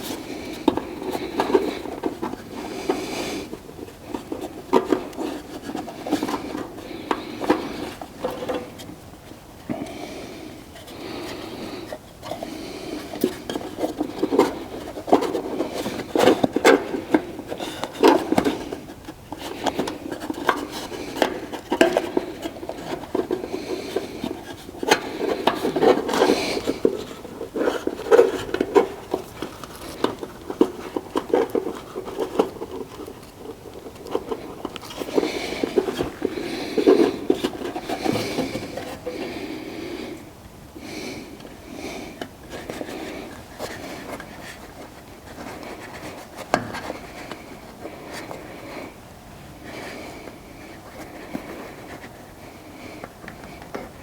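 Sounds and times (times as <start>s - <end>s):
rubbing and scraping: 0.0s - 40.2s, 41.1s - 49.0s.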